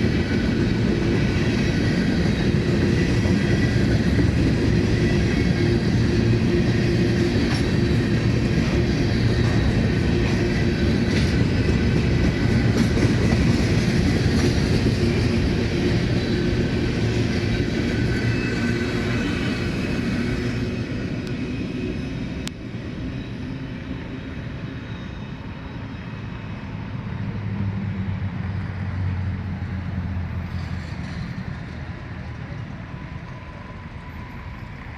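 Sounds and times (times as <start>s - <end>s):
train wheels rumbling and clacking: 0.0s - 34.9s.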